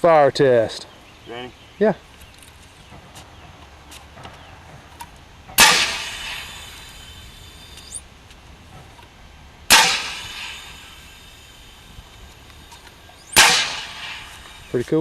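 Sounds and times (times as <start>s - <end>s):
compressed gas launcher blast: 5.6s - 8.0s, 9.7s - 14.8s.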